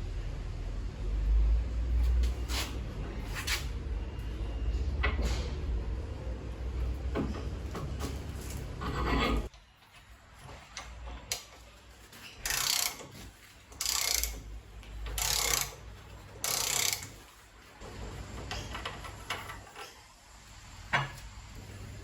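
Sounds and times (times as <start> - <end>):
ratchet-like rasping strokes: 12.4 - 13.1, 13.8 - 14.5, 15.1 - 15.8, 16.4 - 17.2.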